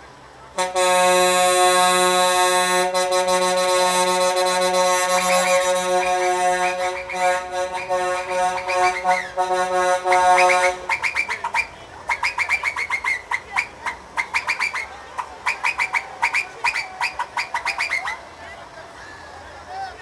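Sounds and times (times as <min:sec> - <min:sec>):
musical air horn chord: 0:00.6 - 0:10.8
horn whistle chirps: 0:00.6 - 0:18.2.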